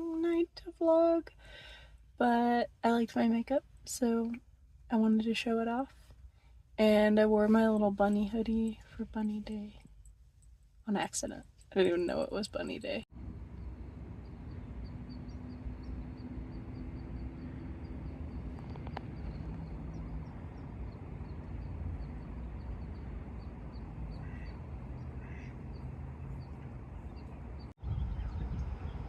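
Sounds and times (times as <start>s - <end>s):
low outdoor rumble: 0.0s - 29.0s
bird chirping: 13.5s - 29.0s.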